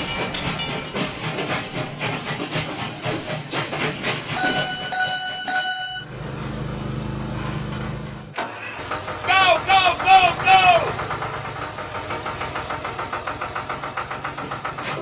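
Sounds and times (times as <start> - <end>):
train wheels clickety-clack: 0.0 - 5.7, 8.9 - 15.0.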